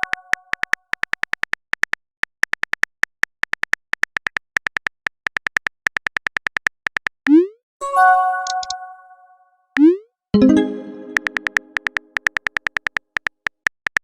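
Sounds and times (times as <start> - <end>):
phone keyboard typing clicks: 8.4 - 8.8, 10.4 - 14.0.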